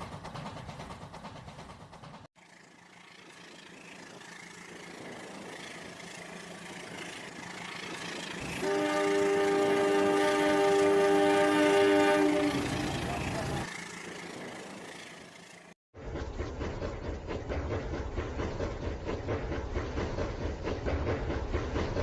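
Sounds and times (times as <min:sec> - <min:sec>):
train approaching: 0:00.0 - 0:22.0
train rumbling: 0:00.0 - 0:22.0
multi-tone train horn: 0:08.4 - 0:13.6.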